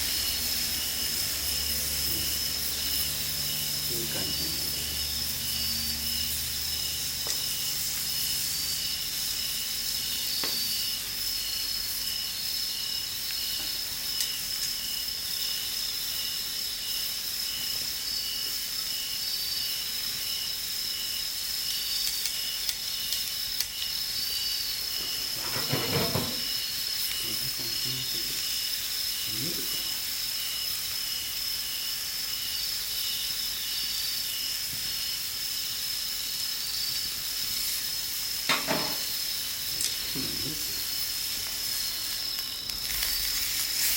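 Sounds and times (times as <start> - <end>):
insects trilling and chirping: 0.0 - 43.9
meat sizzling over campfire: 0.0 - 43.9
fire crackles: 37.0 - 43.9.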